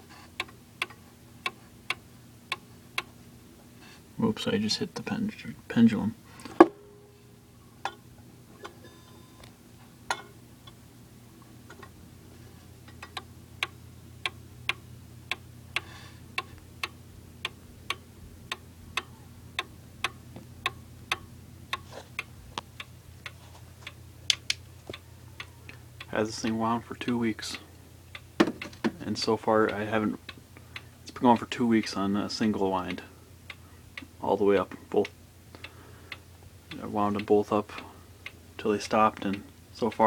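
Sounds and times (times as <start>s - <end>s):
wall clock ticking: 0.0s - 3.2s, 12.6s - 40.0s
steady low hum: 0.0s - 40.0s.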